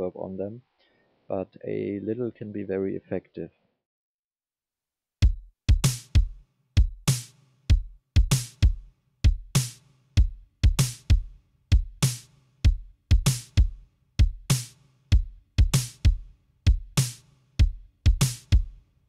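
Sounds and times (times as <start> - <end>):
kick drum thumps: 5.2 - 7.1, 7.7 - 9.6, 10.2 - 12.1, 12.7 - 14.5, 15.2 - 17.0, 17.6 - 18.7.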